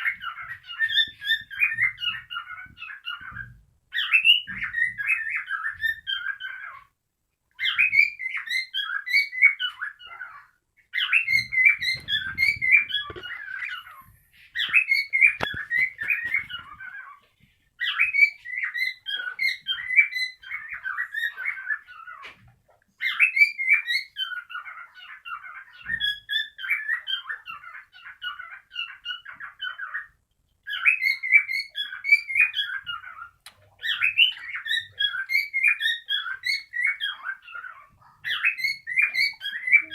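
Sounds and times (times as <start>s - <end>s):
cockatiel warbling: 30.7s - 39.9s.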